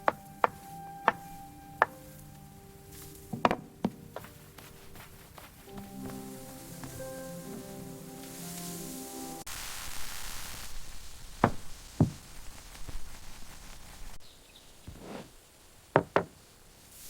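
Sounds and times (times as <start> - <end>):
background music: 0.0 - 9.5
soft hiss: 0.0 - 17.0
dull knocks: 3.3 - 4.0, 11.4 - 12.2, 16.0 - 16.4.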